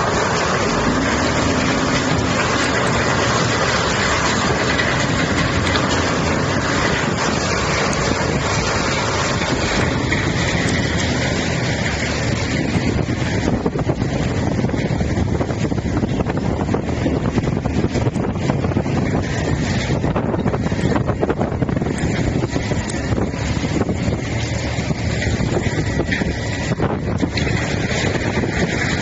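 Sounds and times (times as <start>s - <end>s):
grinding of wood: 0.0s - 14.3s
heavy engine drone: 0.0s - 29.0s.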